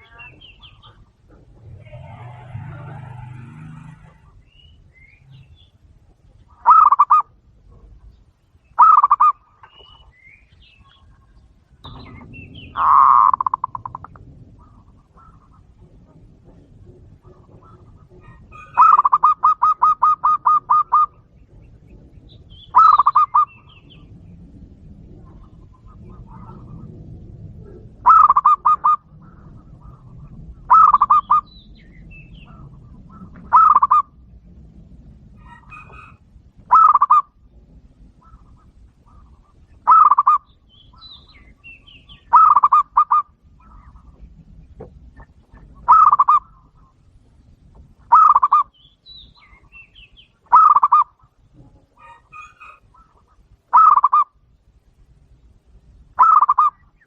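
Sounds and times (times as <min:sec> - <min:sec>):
small birds chirping: 0:00.0 - 0:34.7, 0:35.4 - 0:57.0
dove cooing: 0:06.4 - 0:07.9, 0:08.8 - 0:09.4, 0:11.8 - 0:21.3, 0:22.7 - 0:24.1, 0:25.1 - 0:34.2, 0:35.4 - 0:37.4, 0:38.2 - 0:40.5, 0:42.0 - 0:44.2, 0:45.6 - 0:46.9, 0:48.1 - 0:48.7, 0:50.5 - 0:54.3, 0:56.2 - 0:56.8.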